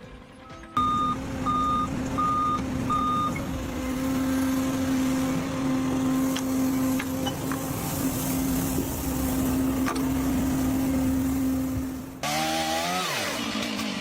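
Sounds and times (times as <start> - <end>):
reversing alarm beeps: 0.8 - 3.4
heavy vehicle engine running: 0.8 - 12.2.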